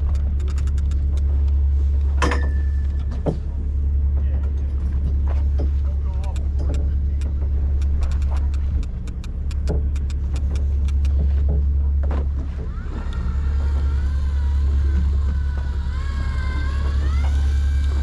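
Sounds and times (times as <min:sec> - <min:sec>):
sharp clicks: 0:00.0 - 0:01.6, 0:06.2 - 0:11.2
low engine drone: 0:00.0 - 0:18.0.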